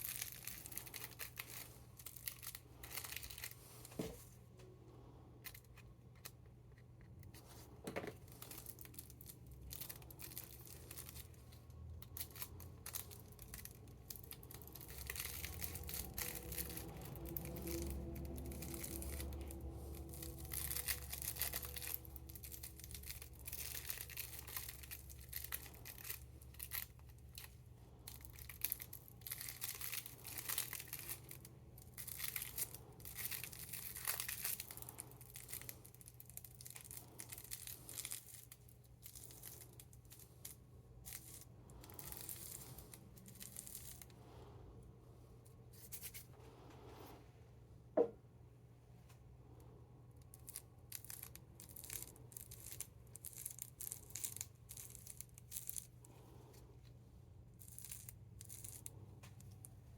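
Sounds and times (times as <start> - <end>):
rolling paper crinkling: 0.0 - 4.7, 7.2 - 44.4
low steady hum: 0.0 - 59.9.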